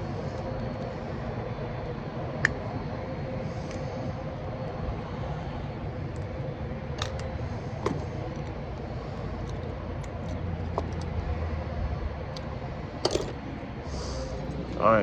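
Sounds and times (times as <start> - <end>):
steady background rumble: 0.0 - 15.0
clicks and taps of lock parts: 7.0 - 8.6, 9.4 - 11.2, 12.3 - 13.4.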